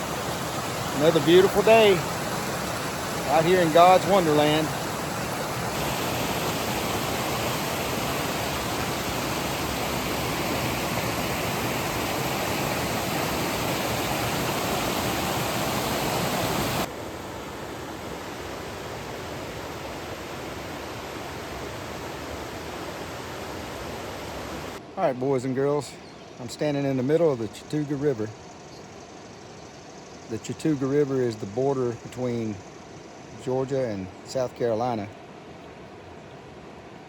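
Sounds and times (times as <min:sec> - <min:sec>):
river water rushing over rapids: 0:00.0 - 0:25.0
steady river flow: 0:00.0 - 0:37.0.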